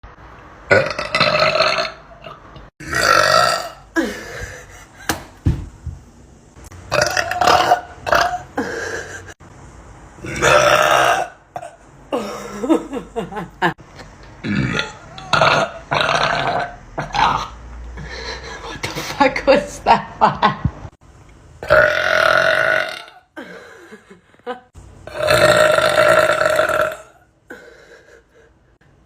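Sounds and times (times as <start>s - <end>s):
person belching: 0.7s - 4.0s, 6.9s - 8.6s, 10.2s - 11.8s, 14.4s - 17.6s, 21.6s - 23.3s, 25.1s - 27.2s.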